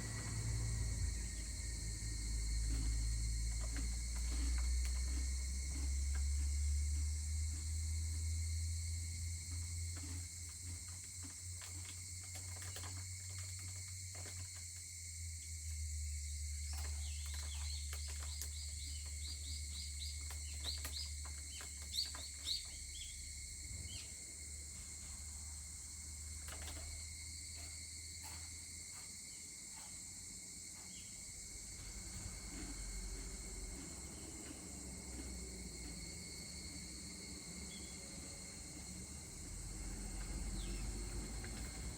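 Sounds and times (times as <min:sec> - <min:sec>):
low hum: 0:00.0 - 0:09.4, 0:31.3 - 0:41.9
crickets and insects chirring: 0:00.0 - 0:41.9.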